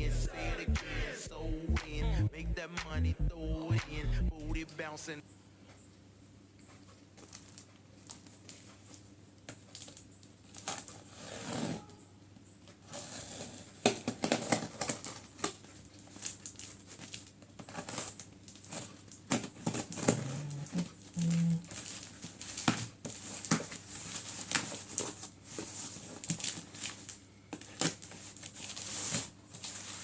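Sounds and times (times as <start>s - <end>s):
packaging crinkling and rustling: 6.6s - 11.9s, 12.6s - 30.0s.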